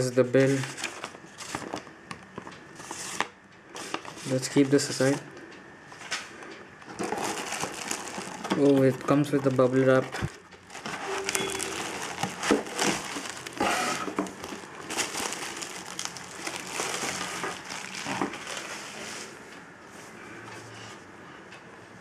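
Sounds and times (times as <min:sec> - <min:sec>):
bubble wrap crinkling: 0:06.9 - 0:19.3.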